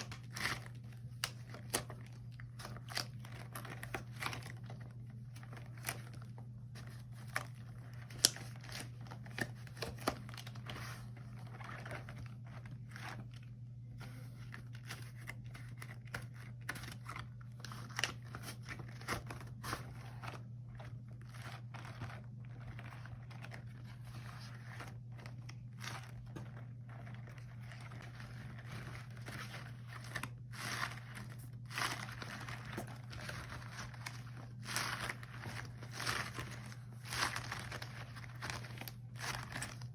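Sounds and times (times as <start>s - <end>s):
rubber gloves crinkling: 0.0s - 39.9s.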